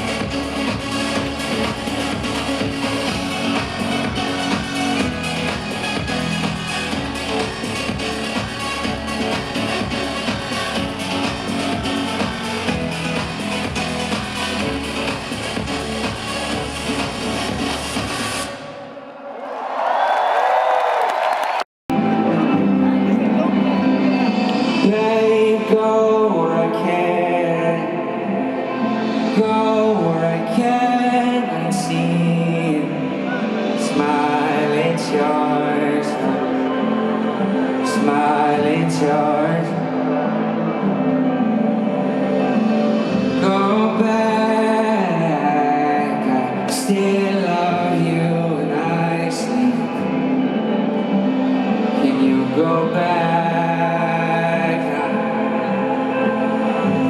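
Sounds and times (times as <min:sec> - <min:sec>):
pop concert music over pa: 0:00.0 - 0:19.1, 0:21.9 - 0:57.0
person singing: 0:21.9 - 0:57.0.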